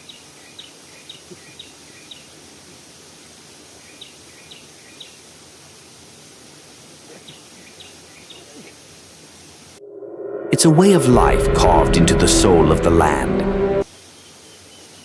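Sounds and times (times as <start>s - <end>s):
steady hiss: 0.0s - 9.8s, 13.8s - 15.0s.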